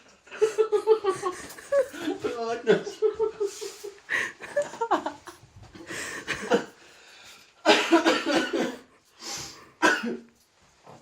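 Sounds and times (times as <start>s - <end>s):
person coughing and gasping: 7.6s - 8.9s, 9.8s - 10.3s.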